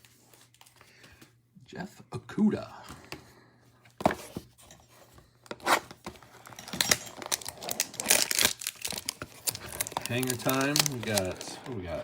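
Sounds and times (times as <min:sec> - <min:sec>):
packaging crinkling and tearing: 0:06.3 - 0:12.0
card packaging snapping: 0:06.8 - 0:11.5.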